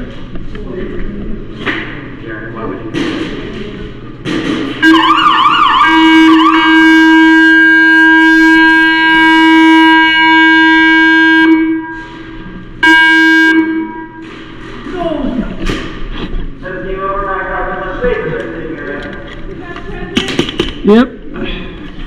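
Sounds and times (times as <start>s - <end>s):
horn blast: 4.8s - 14.4s.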